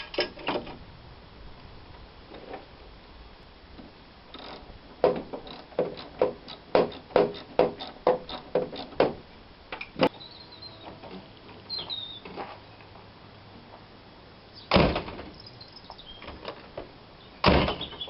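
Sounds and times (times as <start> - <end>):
hard knocks: 5.0 - 9.2
faint high squeaks: 10.1 - 12.4.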